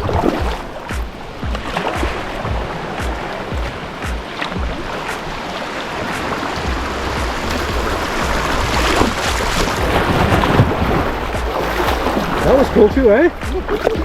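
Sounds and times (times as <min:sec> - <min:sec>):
water rushing in rapids: 0:00.0 - 0:14.0
water splashes: 0:00.0 - 0:14.0.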